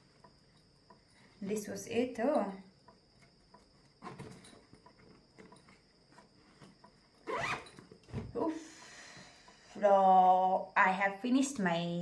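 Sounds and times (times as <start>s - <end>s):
handling rustle and clicks: 2.2s - 8.4s
bag zipper pulled: 7.3s - 7.8s.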